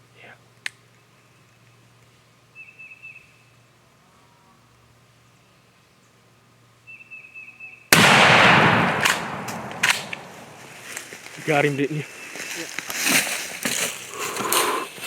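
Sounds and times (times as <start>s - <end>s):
shotgun shot: 7.9s - 10.8s.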